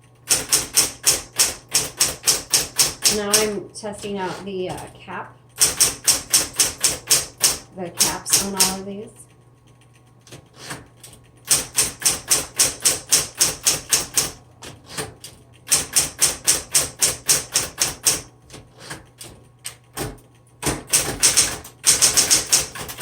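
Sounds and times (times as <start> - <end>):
typewriter key strikes: 0.2 - 3.6, 5.6 - 8.8, 11.4 - 18.3, 19.2 - 23.0.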